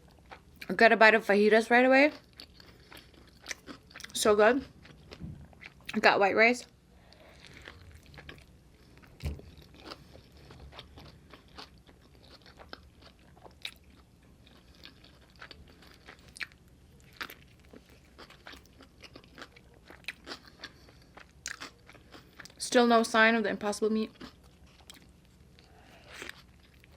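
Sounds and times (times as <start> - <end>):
chewing food: 2.1 - 6.0, 7.1 - 22.6, 24.1 - 26.9
low thump: 5.2 - 5.5.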